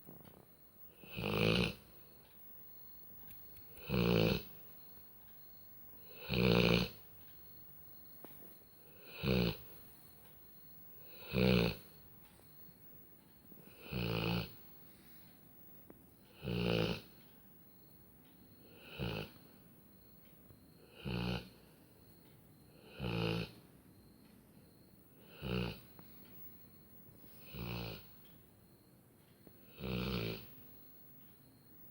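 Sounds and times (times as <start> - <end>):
dog snoring: 0.9 - 2.0, 3.7 - 4.6, 6.0 - 7.1, 8.8 - 9.8, 11.0 - 12.0, 13.6 - 14.7, 16.3 - 17.2, 18.6 - 19.5, 20.8 - 21.7, 22.7 - 23.6, 25.2 - 26.1, 27.4 - 28.2, 29.6 - 30.6.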